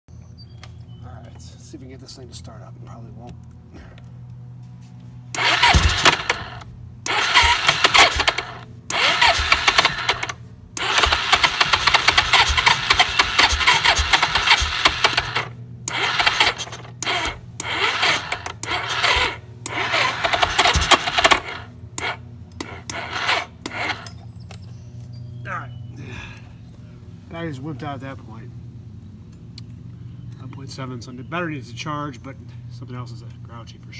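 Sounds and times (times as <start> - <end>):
engine cranking with clanking: 5.3 - 24.2.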